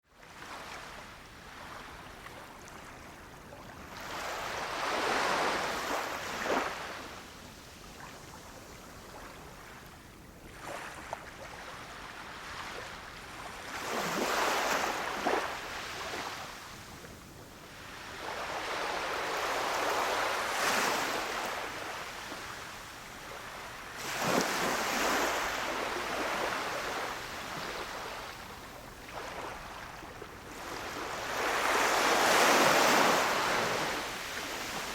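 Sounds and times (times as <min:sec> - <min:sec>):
soft wash of surf: 0:00.2 - 0:34.9
sea waves breaking on beach: 0:17.8 - 0:34.9.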